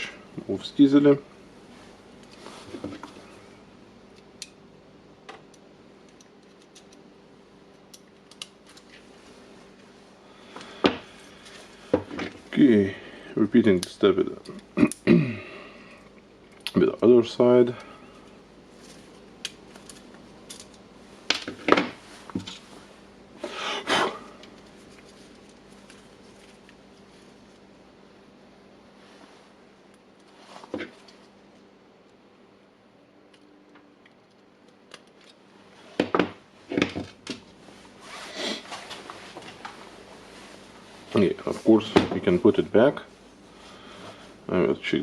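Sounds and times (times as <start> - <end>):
small hard parts clicking and scraping: 18.8 - 20.8
parts clattering: 18.8 - 22.8.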